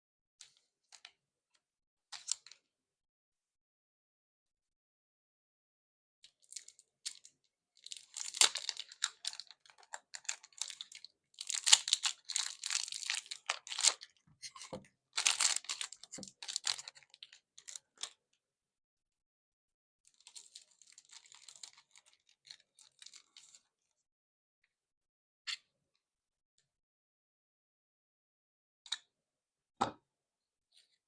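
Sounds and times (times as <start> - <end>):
plastic wrapping rustling and ripping: 7.9 - 14.0, 15.2 - 17.1.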